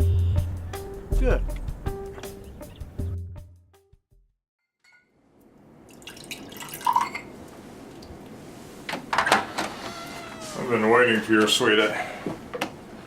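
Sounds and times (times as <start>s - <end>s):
background music: 0.0s - 4.0s
room ambience: 7.3s - 13.0s.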